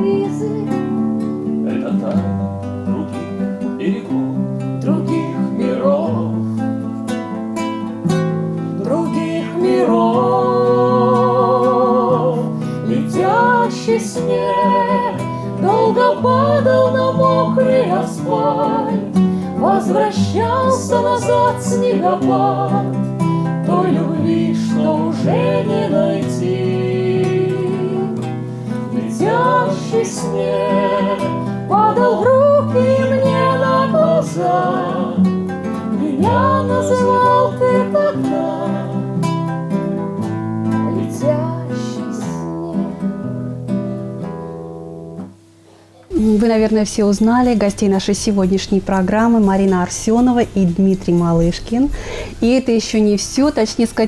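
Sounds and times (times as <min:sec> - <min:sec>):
person singing with vibrato: 0:00.0 - 0:01.0, 0:04.8 - 0:06.7, 0:08.8 - 0:39.5, 0:40.8 - 0:43.3
acoustic guitar: 0:00.0 - 0:54.0.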